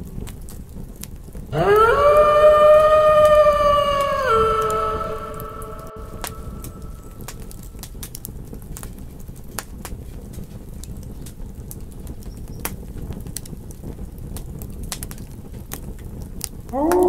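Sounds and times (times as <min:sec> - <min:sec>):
wood popping in campfire: 0:00.0 - 0:01.5, 0:07.2 - 0:17.0
low rumble of burning fire: 0:00.0 - 0:17.0.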